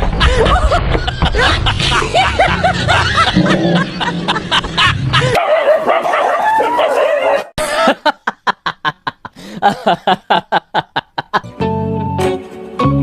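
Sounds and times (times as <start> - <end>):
plucked background music: 11.4 - 13.0.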